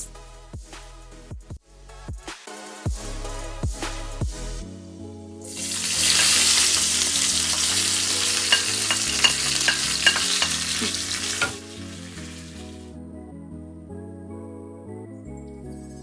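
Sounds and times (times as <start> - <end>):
soft background music: 2.9 - 16.0
vegetables sizzling in hot oil: 5.5 - 12.9
spatula knocking against pan: 7.6 - 11.6.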